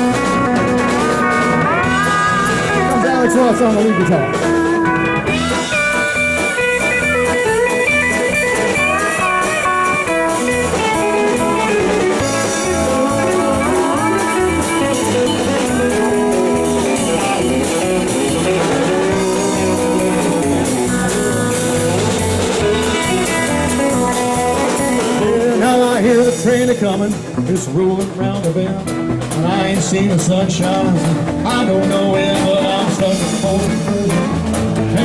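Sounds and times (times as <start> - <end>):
electric guitar solo: 0.0 - 26.4
bass and drum beat: 0.0 - 35.0.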